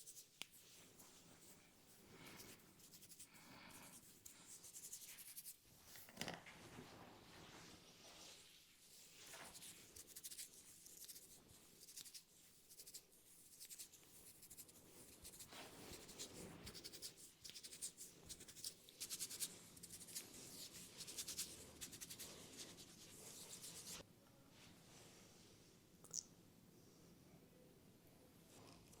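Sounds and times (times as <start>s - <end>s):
fingers scratching hair and scalp: 2.3s - 5.6s, 9.3s - 24.0s.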